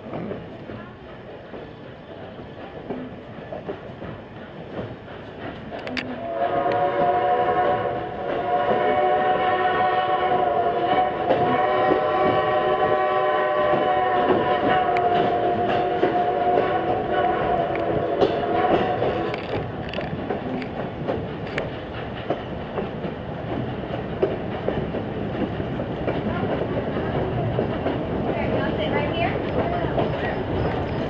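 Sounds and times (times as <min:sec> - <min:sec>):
rail cars clicking over joints: 0:00.0 - 0:31.0
steam whistle blast: 0:06.1 - 0:19.1.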